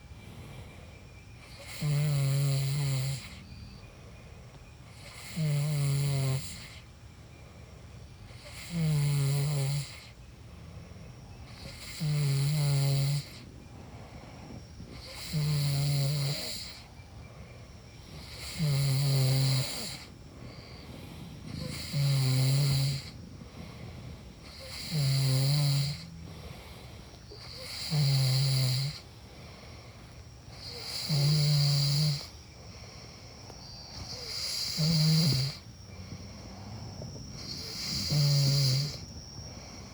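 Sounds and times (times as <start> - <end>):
faint background hiss: 0.0 - 39.9
person snoring: 1.5 - 3.4, 4.9 - 6.8, 8.4 - 10.1, 11.5 - 13.4, 14.5 - 16.9, 18.2 - 23.8, 24.4 - 29.1, 30.5 - 32.3, 33.8 - 39.9.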